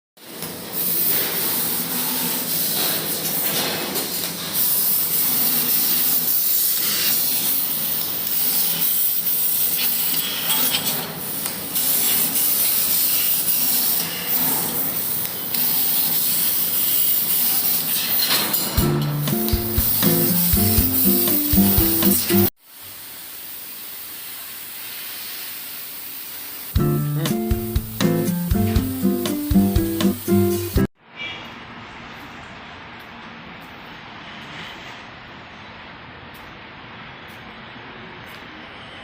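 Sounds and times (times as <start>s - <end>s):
laser cutter hissing: 0.6s - 30.9s.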